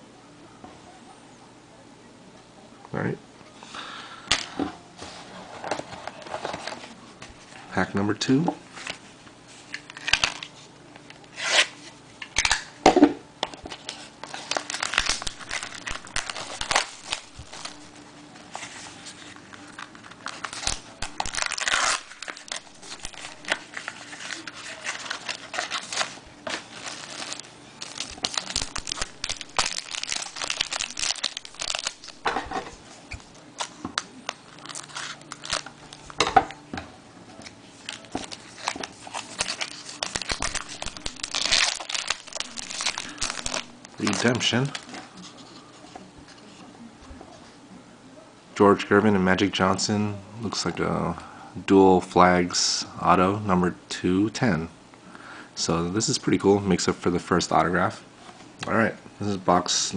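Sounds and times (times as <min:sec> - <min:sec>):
cards being handled: 0:09.6 - 0:12.7, 0:13.4 - 0:36.3, 0:37.4 - 0:46.6
wrapper tearing and crinkling: 0:09.7 - 0:10.5, 0:11.3 - 0:11.7, 0:12.3 - 0:12.7, 0:13.7 - 0:18.0, 0:19.6 - 0:32.7, 0:33.6 - 0:36.2, 0:37.8 - 0:45.1.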